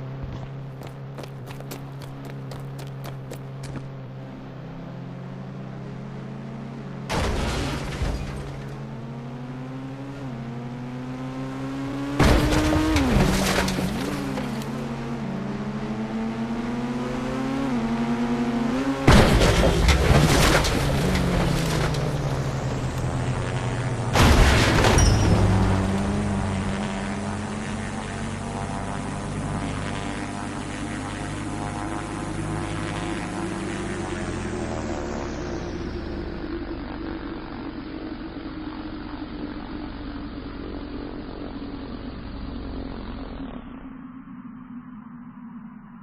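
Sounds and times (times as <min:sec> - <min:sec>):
helicopter engine and rotor drone: 0:20.8 - 0:46.0.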